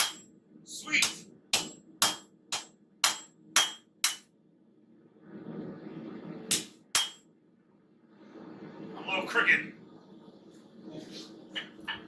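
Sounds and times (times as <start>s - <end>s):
hammer striking hot steel on anvil: 0.0s - 0.3s, 1.0s - 4.3s, 6.5s - 7.3s
low rushing noise: 4.7s - 11.6s.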